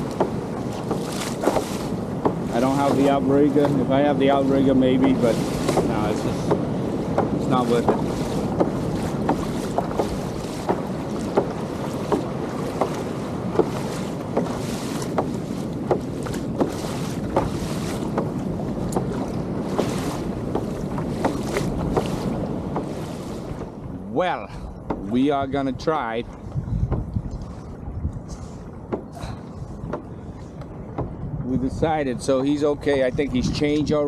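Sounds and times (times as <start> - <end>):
water slapping against kayak hull: 0.0 - 34.0
wind buffeting microphone: 0.0 - 34.0.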